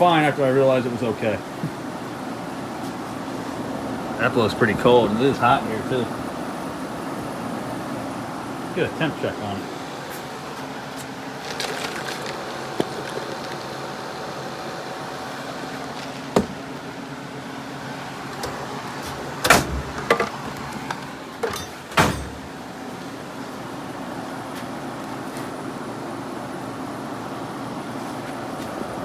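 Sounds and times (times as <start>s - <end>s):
window air conditioner humming: 0.0s - 29.0s
knocks and clatters from handling: 18.4s - 22.5s.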